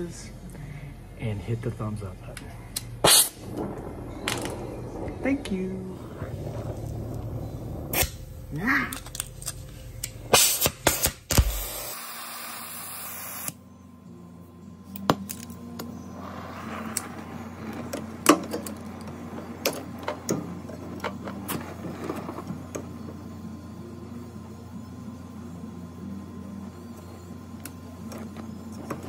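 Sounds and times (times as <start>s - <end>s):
steady low hum: 0.0s - 29.0s
hiss: 3.0s - 3.6s, 10.3s - 13.6s, 16.0s - 17.5s.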